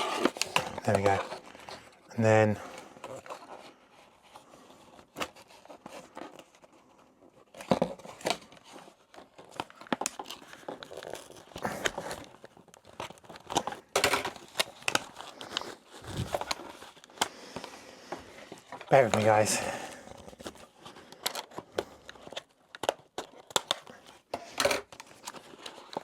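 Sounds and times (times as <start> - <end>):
cardboard tearing and crinkling: 0.0 - 1.8, 2.7 - 17.6, 18.4 - 26.0
packaging tape clicks: 9.2 - 17.7, 20.4 - 26.0.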